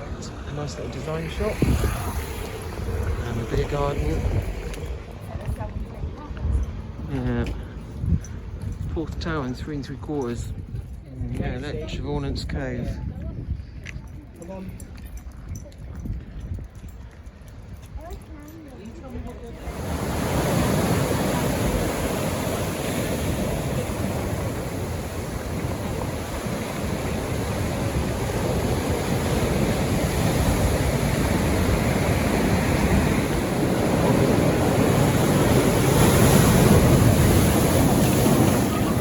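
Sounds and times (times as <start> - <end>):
sea surf breaking on shore: 0.0 - 5.4, 19.4 - 39.0.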